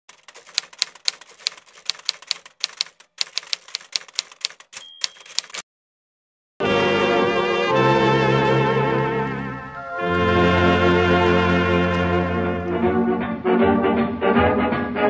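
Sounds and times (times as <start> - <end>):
typewriter clacking: 0.1 - 5.6
typewriter bell ring: 4.2 - 5.6.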